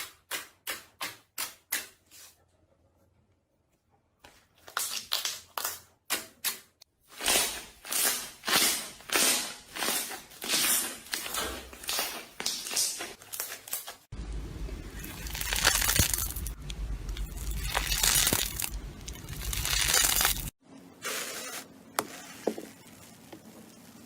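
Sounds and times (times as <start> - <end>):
slime squishing: 14.9 - 20.5
slime crackling: 15.0 - 20.5.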